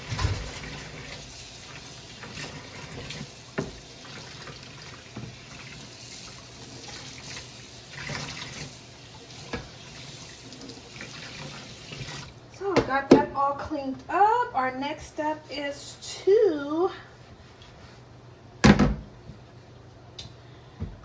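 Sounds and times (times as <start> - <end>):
tap running into sink: 0.0 - 1.2, 2.2 - 5.6, 9.4 - 9.9.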